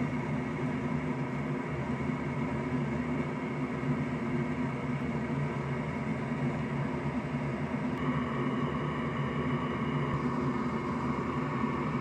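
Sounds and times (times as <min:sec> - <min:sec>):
electric fan whirring: 0:00.0 - 0:12.0
faint high whine: 0:00.0 - 0:12.0.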